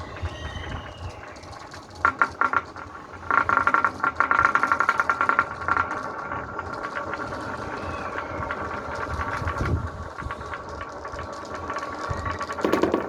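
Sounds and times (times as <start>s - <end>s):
marbles rolling on a track: 12.6s - 13.0s.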